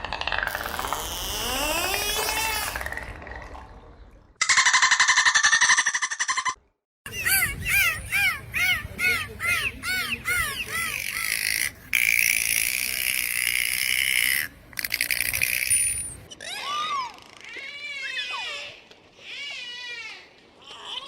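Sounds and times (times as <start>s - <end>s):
dolphin buzzing squawk: 0.5s - 3.0s, 7.1s - 16.1s
dolphin chirps: 4.5s - 16.5s
dolphin clicks: 8.6s - 16.3s.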